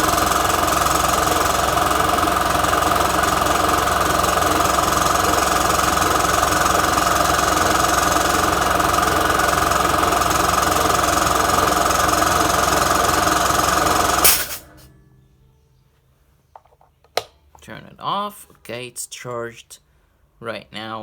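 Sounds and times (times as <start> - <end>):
air compressor running: 0.0 - 14.9.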